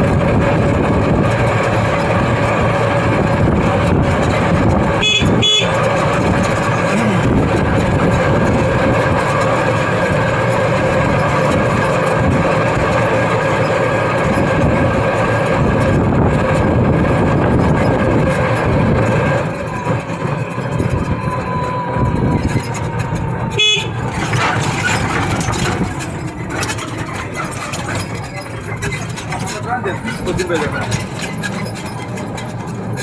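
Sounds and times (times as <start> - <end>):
road traffic: 0.0 - 33.0
vehicle horn blaring: 4.9 - 7.6, 23.5 - 24.1.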